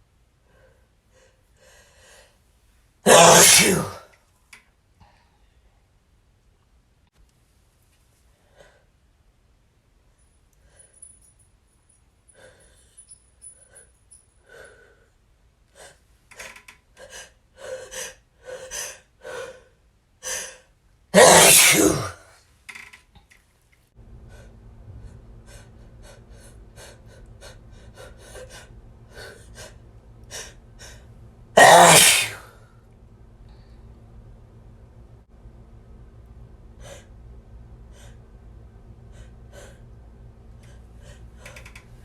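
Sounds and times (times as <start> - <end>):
man sneezing: 3.1 - 4.1, 21.2 - 22.2, 31.6 - 32.6.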